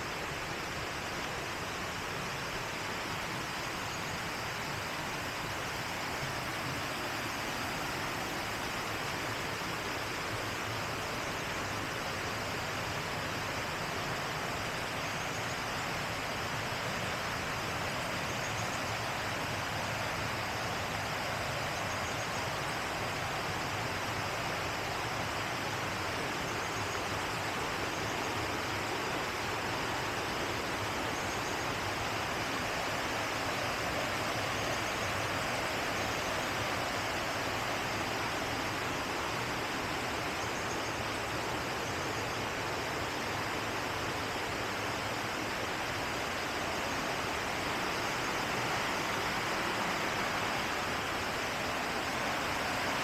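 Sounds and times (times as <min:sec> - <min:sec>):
river water rushing: 0:00.0 - 0:53.0.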